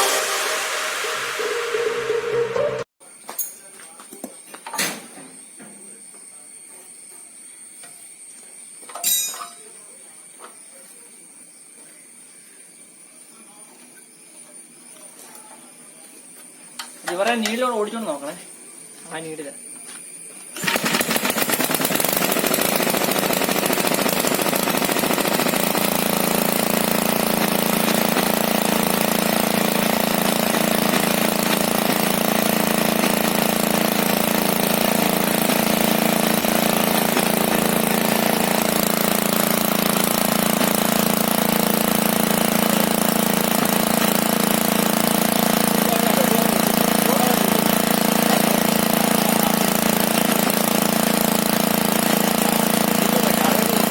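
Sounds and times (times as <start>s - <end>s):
engine running steadily: 23.7s - 53.9s.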